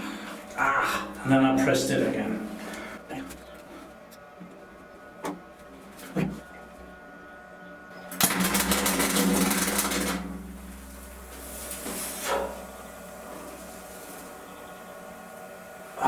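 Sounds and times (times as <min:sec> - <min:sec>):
welding arc crackling: 0:08.1 - 0:16.0.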